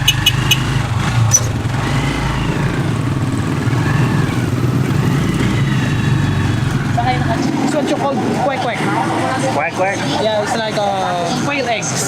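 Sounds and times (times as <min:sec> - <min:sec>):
small motorcycle engine running: 0:00.0 - 0:07.5.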